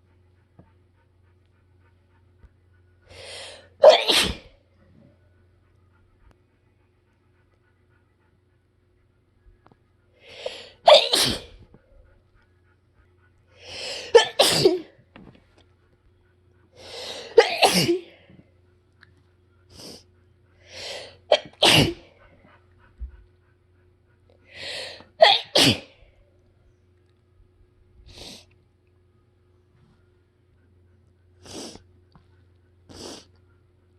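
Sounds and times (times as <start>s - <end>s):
woman sneezing: 3.8s - 4.5s, 10.4s - 11.6s, 13.8s - 14.9s, 16.9s - 18.1s, 20.9s - 22.0s, 25.2s - 25.9s.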